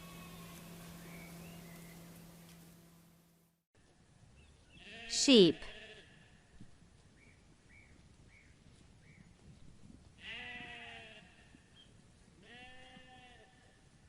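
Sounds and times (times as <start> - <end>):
sheep bleating: 0.0 - 0.8, 4.8 - 6.5, 10.2 - 11.6, 12.4 - 13.8.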